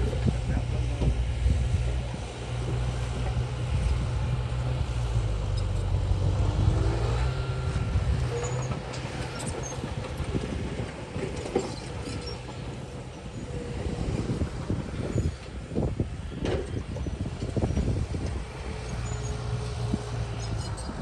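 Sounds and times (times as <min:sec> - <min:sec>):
heavy diesel engine droning: 0:00.0 - 0:21.0
metallic squeals and clanks: 0:05.5 - 0:10.6, 0:11.2 - 0:14.2, 0:15.0 - 0:15.4, 0:18.7 - 0:21.0.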